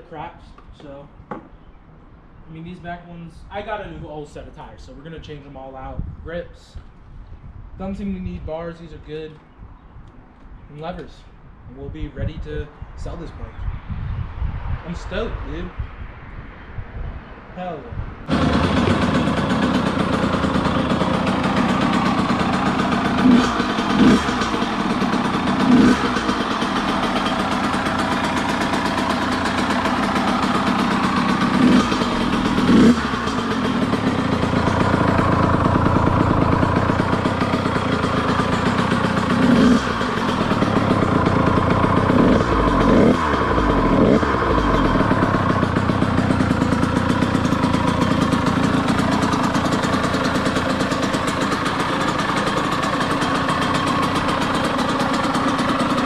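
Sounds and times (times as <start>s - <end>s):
engine throttle blips: 18.3s - 56.0s
motorcycle engine idling: 18.3s - 56.0s.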